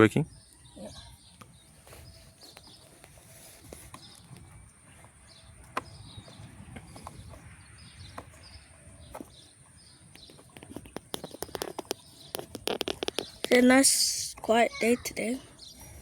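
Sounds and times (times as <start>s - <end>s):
birds chirping: 0.0s - 16.0s
sharp clicks and taps: 10.2s - 14.6s.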